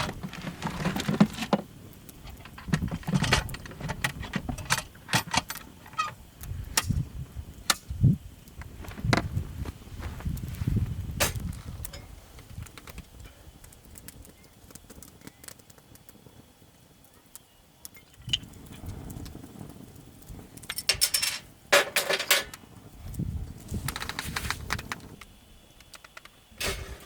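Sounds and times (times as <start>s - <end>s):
rustling: 0.0s - 6.2s
small objects clinking and knocking: 20.6s - 22.6s.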